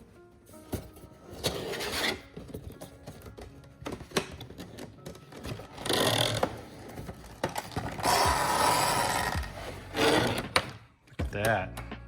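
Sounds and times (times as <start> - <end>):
packaging scraping and rustling: 0.5 - 3.3.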